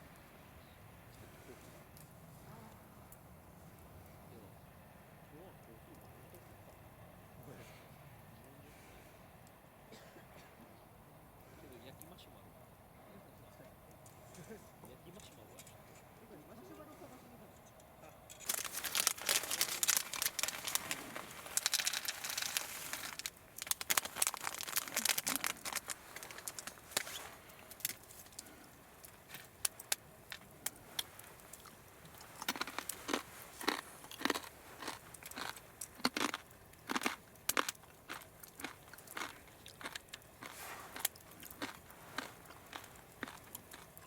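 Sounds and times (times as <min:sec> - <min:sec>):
crinkling and crunching: 0:18.4 - 0:44.0.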